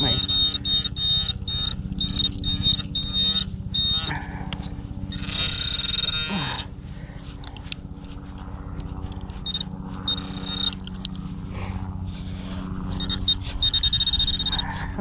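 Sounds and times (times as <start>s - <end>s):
high-pitched alert tones: 0.0s - 4.1s
probe scraping in dirt: 0.0s - 14.9s
steady low buzz: 0.0s - 15.0s.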